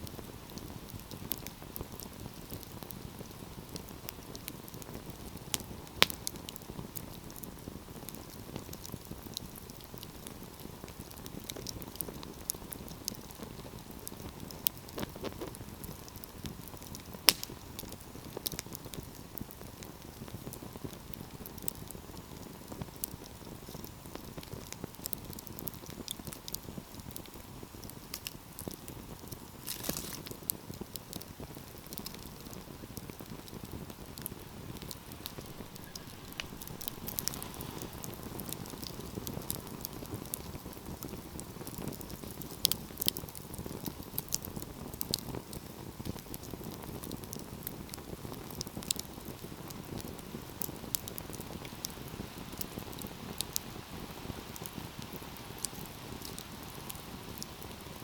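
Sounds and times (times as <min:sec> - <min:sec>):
fire crackles: 0:00.0 - 0:58.0
sharp fire pops: 0:00.1 - 0:06.6, 0:16.6 - 0:18.7, 0:29.3 - 0:51.6
wood fire rushing: 0:29.6 - 0:30.4, 0:31.8 - 0:44.0.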